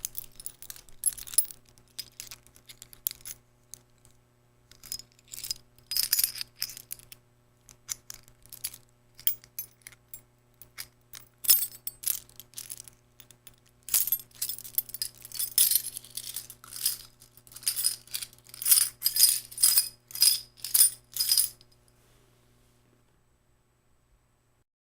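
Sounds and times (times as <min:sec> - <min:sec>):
metal keys jingling: 0:13.9 - 0:21.7.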